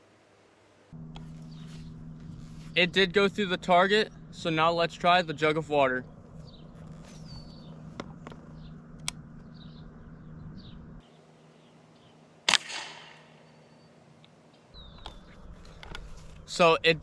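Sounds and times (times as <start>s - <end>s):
birds chirping faintly: 1.0s - 12.4s, 13.2s - 17.0s
shotgun shot: 12.5s - 13.4s.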